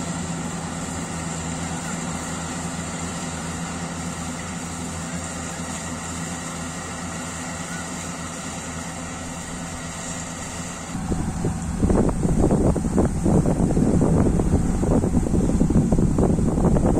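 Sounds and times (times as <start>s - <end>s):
combine harvester engine hum: 0.0s - 16.9s
high whine: 0.0s - 16.9s
loud uneven rumbling: 6.7s - 16.9s.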